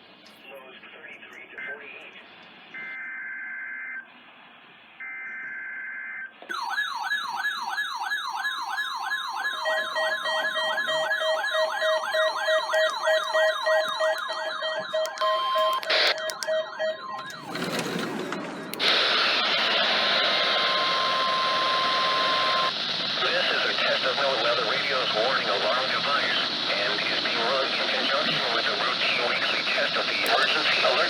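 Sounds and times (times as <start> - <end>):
warbling alarm siren: 5.0 - 22.8
steady beeping tones: 9.3 - 19.0
radio static burst: 17.1 - 31.0.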